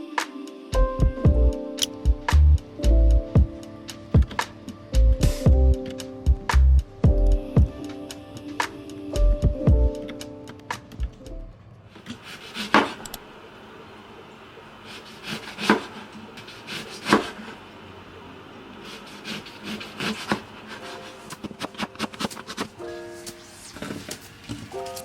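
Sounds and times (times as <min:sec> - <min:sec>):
rubbing and handling noise: 0:12.0 - 0:13.2, 0:18.9 - 0:25.0.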